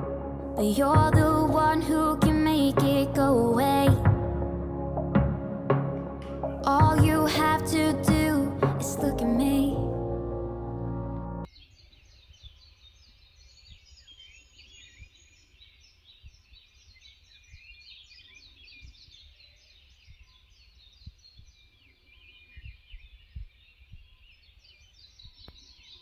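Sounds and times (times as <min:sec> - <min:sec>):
low rumble: 0:00.0 - 0:11.5
small birds chirping and trilling: 0:11.5 - 0:26.0.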